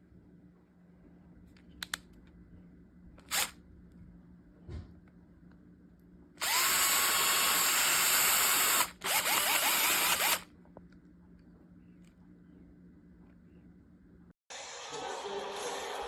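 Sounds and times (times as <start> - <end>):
cordless drill motor running: 3.3 - 3.5, 6.4 - 10.4.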